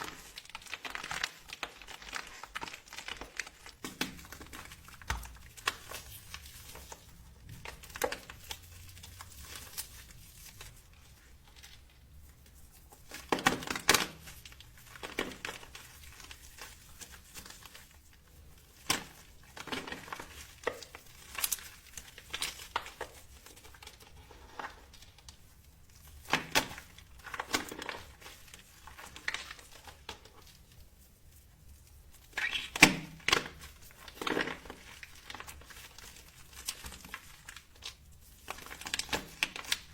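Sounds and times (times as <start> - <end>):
soap crunching and crackling: 0.0 - 39.9.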